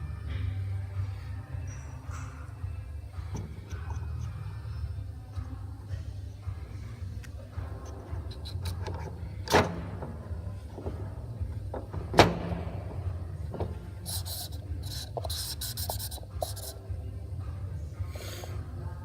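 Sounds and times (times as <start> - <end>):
short hissing bursts: 14.1 - 16.8.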